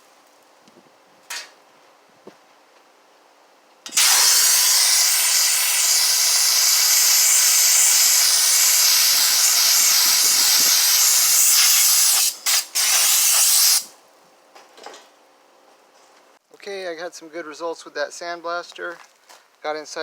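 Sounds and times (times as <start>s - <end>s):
sandblaster hissing: 3.9s - 13.9s.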